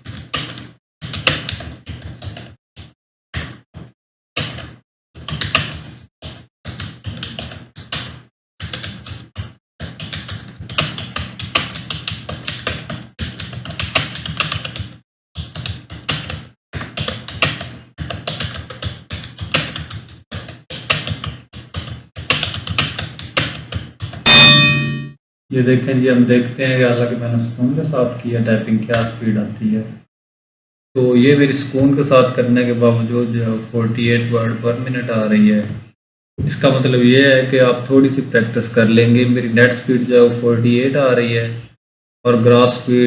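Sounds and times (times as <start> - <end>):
keyboard typing fast: 6.7 - 23.8.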